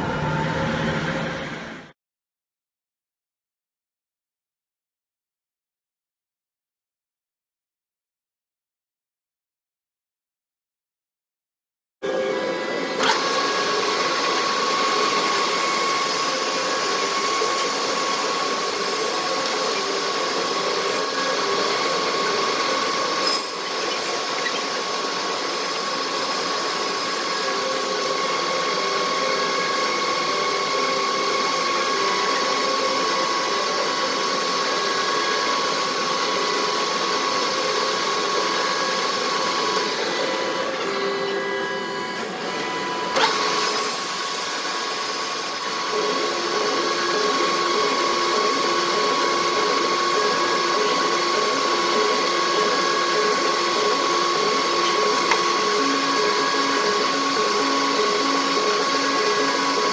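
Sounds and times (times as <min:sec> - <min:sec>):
high whine: 0:00.0 - 0:02.0
metal lathe running: 0:12.0 - 0:59.9.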